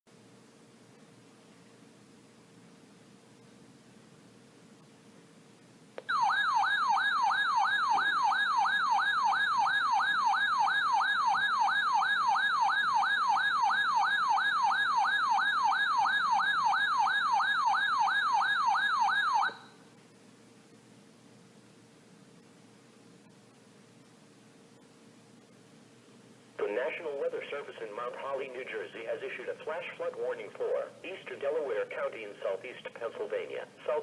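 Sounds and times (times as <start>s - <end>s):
electronic siren warbling: 6.1s - 19.7s.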